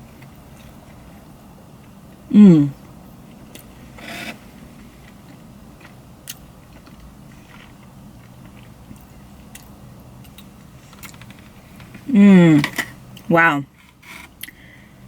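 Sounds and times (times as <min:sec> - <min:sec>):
steady low hum: 0:00.0 - 0:15.0
person chewing soft food: 0:05.1 - 0:11.3.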